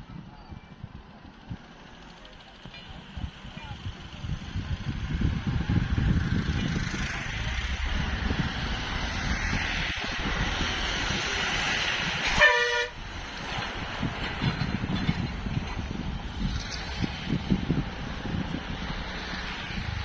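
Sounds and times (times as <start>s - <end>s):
vehicle noise: 0.0s - 20.0s
vehicle horn toot: 12.3s - 13.0s.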